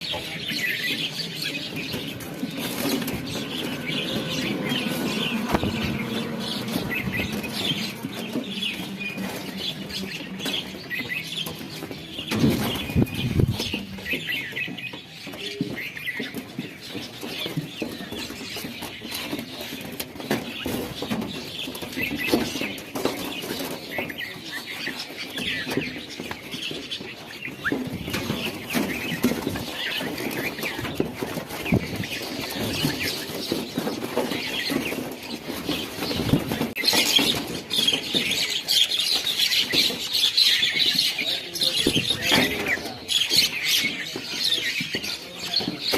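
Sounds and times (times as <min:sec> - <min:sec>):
flock of small birds chirping: 0:00.0 - 0:45.9
low rumble: 0:03.0 - 0:09.0.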